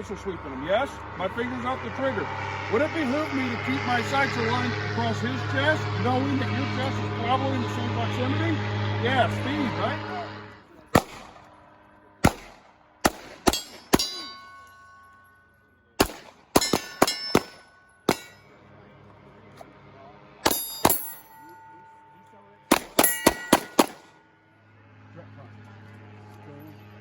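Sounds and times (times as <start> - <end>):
handgun shots: 10.9 - 11.4, 12.2 - 14.3, 16.0 - 18.4, 22.7 - 24.1
steel targets clanging: 12.3 - 18.7, 20.4 - 24.3.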